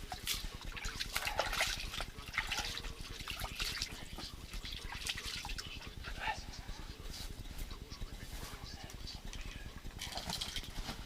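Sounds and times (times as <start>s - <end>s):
water splashing and trickling: 0.0s - 5.8s
low steady rumble: 0.0s - 11.0s.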